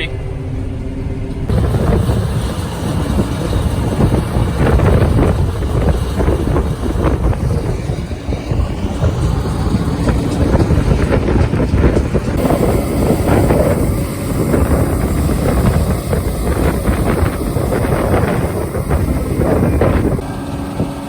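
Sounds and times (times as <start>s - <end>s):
combine harvester rumbling: 0.0s - 21.0s
wind buffeting microphone: 1.4s - 21.0s.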